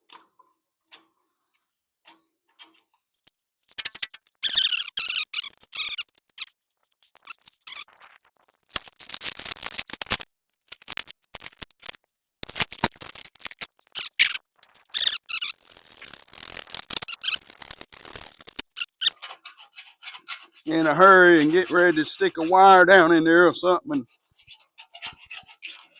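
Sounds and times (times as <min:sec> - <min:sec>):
sharp clicks: 0:03.7 - 0:08.1, 0:08.7 - 0:19.2
scraping and rattling: 0:03.7 - 0:22.0.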